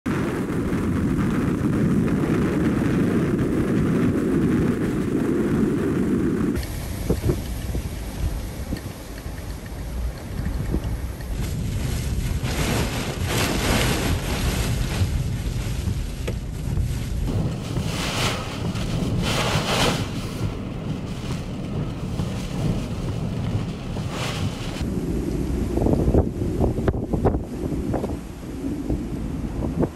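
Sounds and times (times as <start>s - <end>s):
gale wind on microphone: 0.1s - 29.9s
surf waves: 11.5s - 29.9s.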